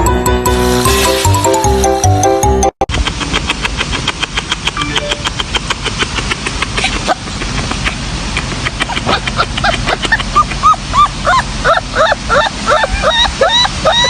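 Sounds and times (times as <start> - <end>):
fast even clicking: 2.9 - 9.8
puppies whimpering and yipping: 9.0 - 14.0.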